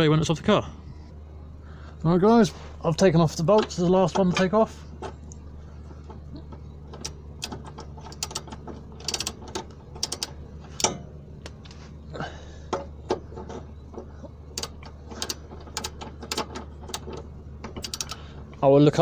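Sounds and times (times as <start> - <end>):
ratchet wrench clicking: 7.0 - 11.0, 14.5 - 18.3.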